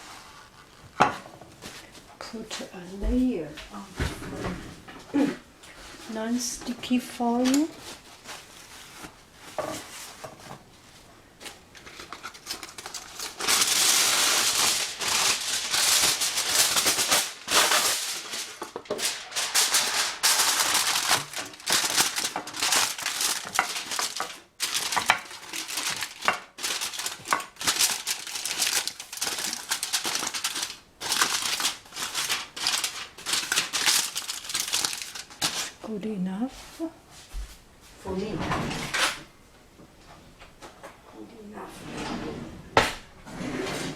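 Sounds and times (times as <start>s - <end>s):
aluminium foil crinkling: 6.1s - 10.3s, 11.4s - 36.0s.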